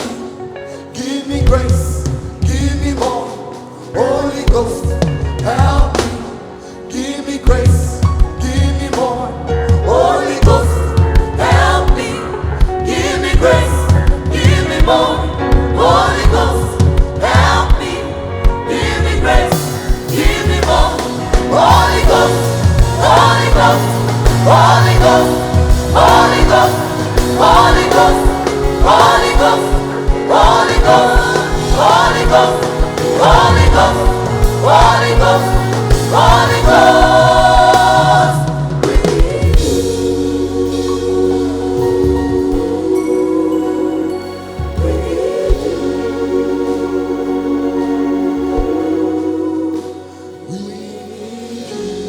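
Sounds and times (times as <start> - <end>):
choir singing: 0.0 - 52.0
band with steady beat: 7.5 - 43.0.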